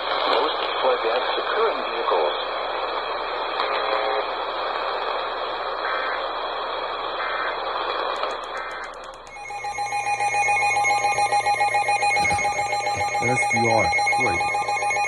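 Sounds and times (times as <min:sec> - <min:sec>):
radio static: 0:00.0 - 0:09.0, 0:12.0 - 0:15.0
short data bursts: 0:08.0 - 0:15.0
pulsing electronic ringing: 0:09.3 - 0:15.0.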